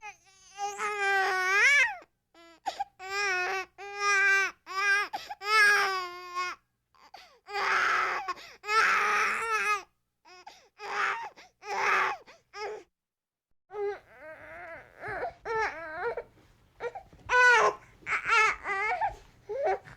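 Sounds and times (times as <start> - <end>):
baby crying: 0.0 - 6.6, 7.5 - 12.9, 13.7 - 19.9.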